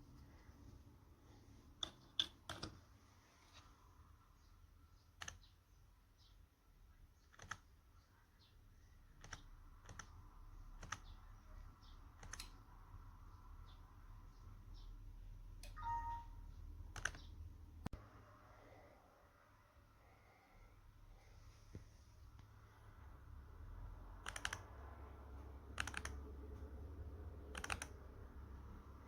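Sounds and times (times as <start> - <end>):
keyboard and mouse clicking: 1.8 - 2.8, 5.2 - 5.6, 7.2 - 7.8, 9.2 - 11.2, 12.1 - 12.7, 16.9 - 17.4, 24.2 - 24.8, 25.7 - 26.4, 27.4 - 28.1.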